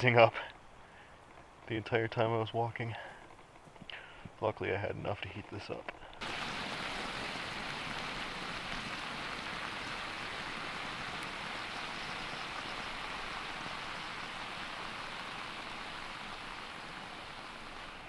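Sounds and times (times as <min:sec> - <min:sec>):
heating element fizzing hiss: 0:06.2 - 0:18.0.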